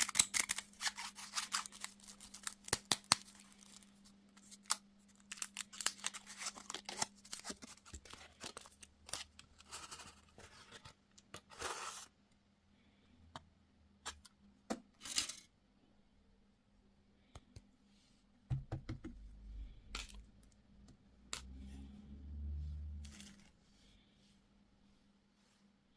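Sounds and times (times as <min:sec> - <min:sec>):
faint low hum: 0:00.1 - 0:25.9
crisp eating crackles and clicks: 0:04.4 - 0:09.5.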